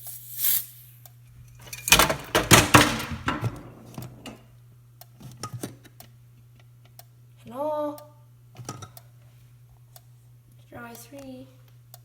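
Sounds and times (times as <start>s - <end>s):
aerosol spray hissing: 0.0s - 1.0s.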